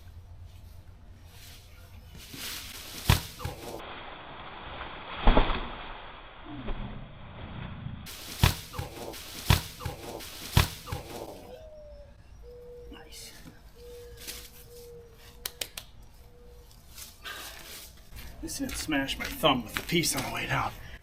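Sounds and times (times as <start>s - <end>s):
rustling and shuffling: 0.0s - 3.9s, 8.1s - 11.6s, 13.2s - 15.4s, 16.0s - 20.8s.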